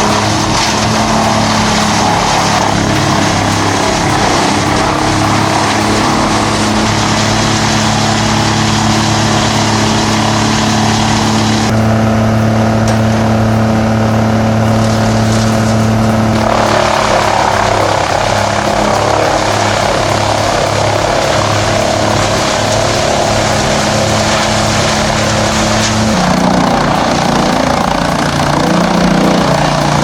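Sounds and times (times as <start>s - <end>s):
wood chipper engine running: 0.0s - 30.0s.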